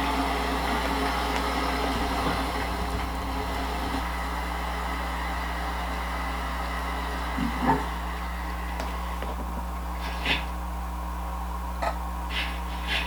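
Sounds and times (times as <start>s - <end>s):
low hum: 0.0s - 13.0s
hiss: 10.0s - 10.6s, 12.3s - 13.0s.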